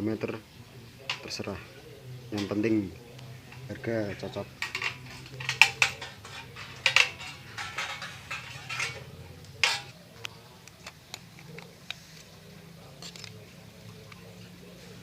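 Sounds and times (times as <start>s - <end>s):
small objects clinking and knocking: 1.0s - 1.6s, 2.3s - 10.0s
scraping knock: 4.5s - 9.9s.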